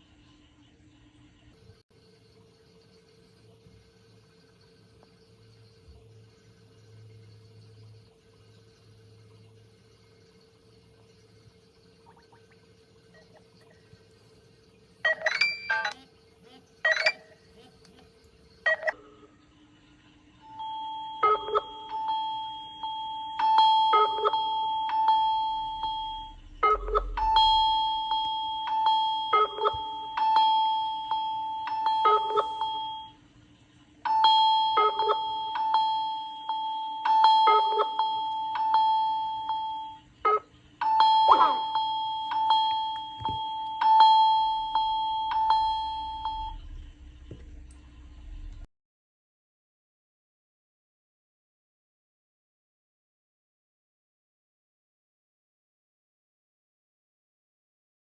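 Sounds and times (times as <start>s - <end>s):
chiming phone ringtone: 15.1s - 16.0s, 16.9s - 17.3s, 20.4s - 33.2s, 34.0s - 46.6s.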